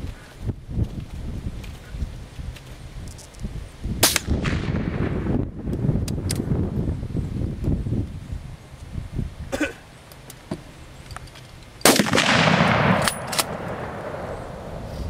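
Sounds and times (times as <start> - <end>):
sharp gun cracks: 4.0 - 5.0, 11.8 - 14.8
gunshots: 11.8 - 14.9.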